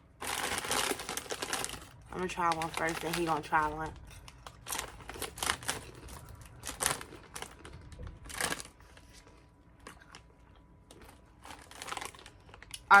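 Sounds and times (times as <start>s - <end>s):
chip bag crinkling: 0.1s - 13.0s
potato chips crunching: 0.1s - 13.0s.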